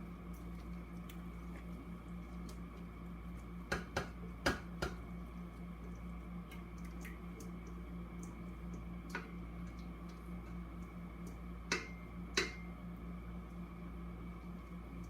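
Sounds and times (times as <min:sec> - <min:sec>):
steady low hum: 0:00.0 - 0:15.0
utensil knocking against dish: 0:03.7 - 0:05.0.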